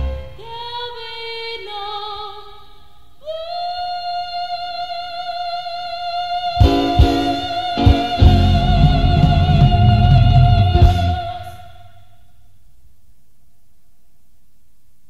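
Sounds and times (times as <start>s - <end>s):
woman singing blues: 0.0s - 12.1s
drums and guitar: 6.6s - 11.6s.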